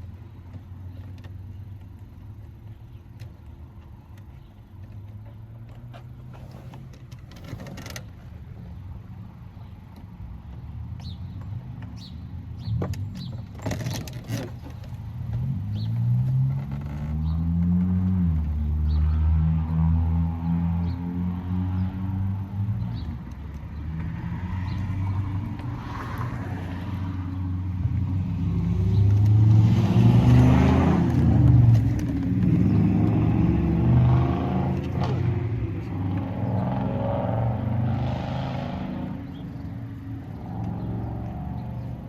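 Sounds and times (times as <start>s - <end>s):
vehicle engine passing by: 15.4s - 42.0s.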